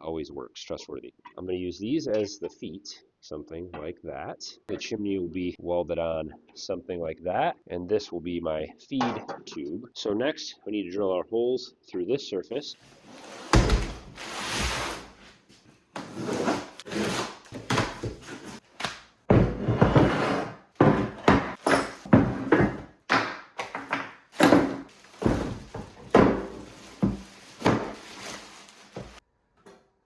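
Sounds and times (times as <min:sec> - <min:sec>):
hard objects clunking and knocking: 0:13.4 - 0:14.2, 0:16.0 - 0:29.2.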